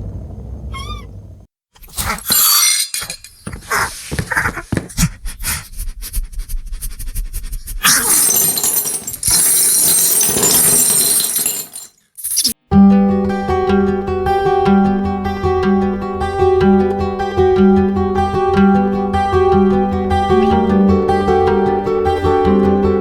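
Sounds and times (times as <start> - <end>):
crashing clatter: 7.9 - 12.0
sharp clinks and rattles: 7.9 - 12.6.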